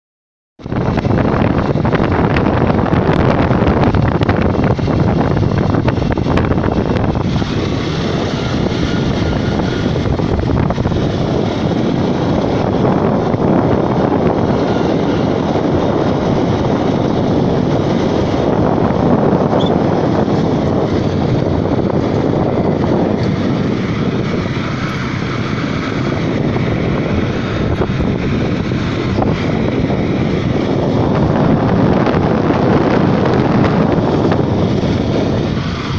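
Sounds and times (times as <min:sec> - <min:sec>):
motorcycle engine drone: 0:00.6 - 0:35.9
wind noise on microphone: 0:00.6 - 0:35.9.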